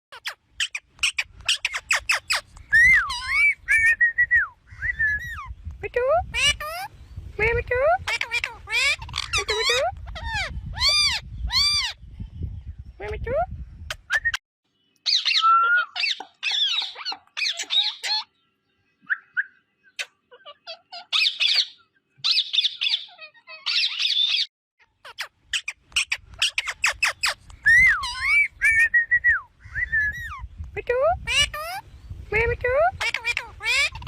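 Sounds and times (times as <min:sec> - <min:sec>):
parakeet squawking and chattering: 0:00.1 - 0:03.9, 0:06.3 - 0:06.9, 0:08.0 - 0:12.0, 0:15.1 - 0:18.4, 0:19.9 - 0:28.9, 0:31.2 - 0:31.9, 0:32.9 - 0:34.0.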